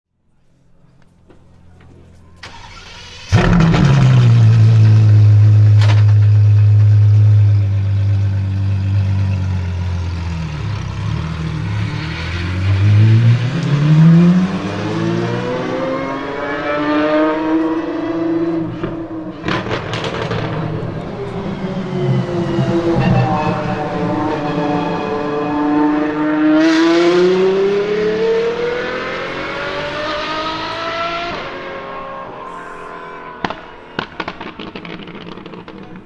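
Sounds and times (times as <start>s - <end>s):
sharp engine crack: 2.4s - 16.2s, 18.7s - 27.2s
car engine revving: 2.4s - 36.0s.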